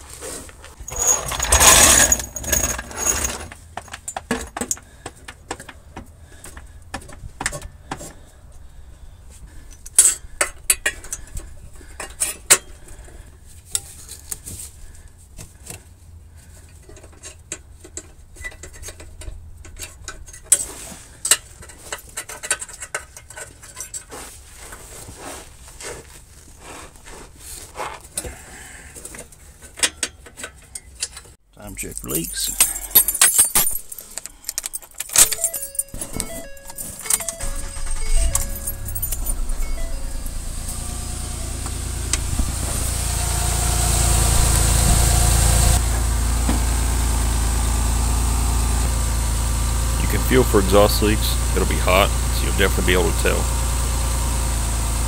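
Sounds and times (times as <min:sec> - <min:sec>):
tools clinking on metal: 0:00.8 - 0:04.8, 0:29.8 - 0:40.3.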